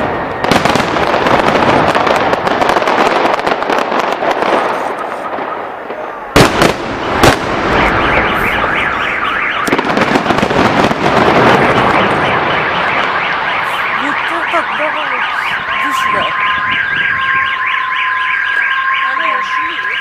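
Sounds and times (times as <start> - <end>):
fireworks crackling and banging: 0.0 - 20.0
car alarms warbling: 6.9 - 20.0
two-tone alarm: 6.9 - 20.0.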